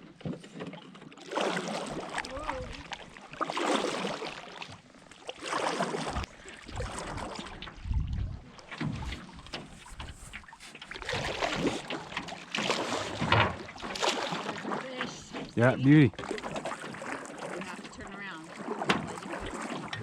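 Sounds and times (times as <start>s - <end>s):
people moving in a canoe: 0.0s - 20.0s
wind on microphone: 6.1s - 8.6s.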